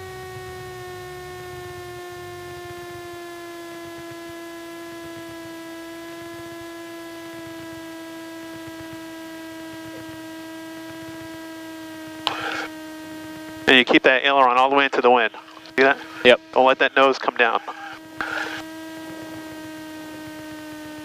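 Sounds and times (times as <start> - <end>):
stall warning horn buzzing: 0.0 - 21.0
faint low engine rumble: 6.1 - 21.0.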